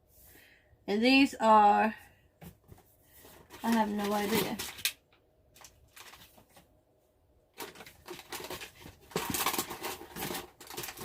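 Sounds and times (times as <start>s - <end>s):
snack packaging crinkling: 3.5s - 6.6s, 7.5s - 11.0s.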